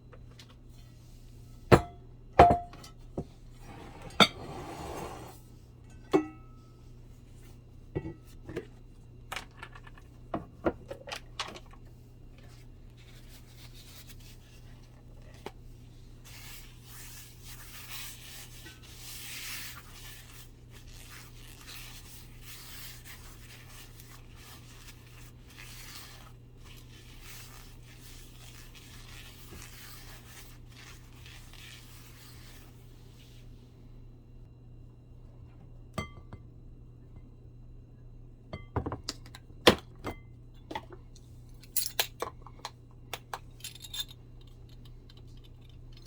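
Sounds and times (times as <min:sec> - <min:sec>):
rubbing and scraping food: 0:12.4 - 0:33.5.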